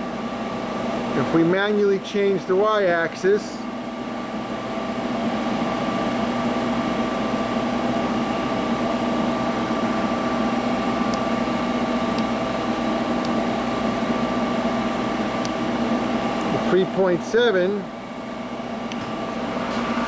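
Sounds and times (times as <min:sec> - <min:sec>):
hydraulic pump humming: 0:00.0 - 0:20.0.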